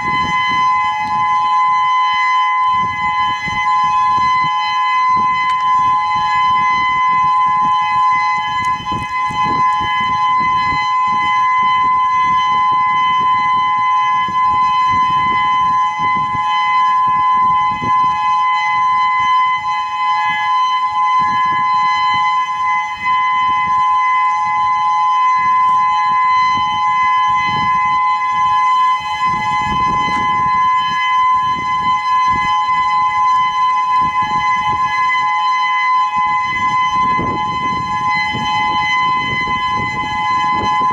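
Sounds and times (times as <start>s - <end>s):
outdoor warning siren steady tone: 0.0s - 40.9s.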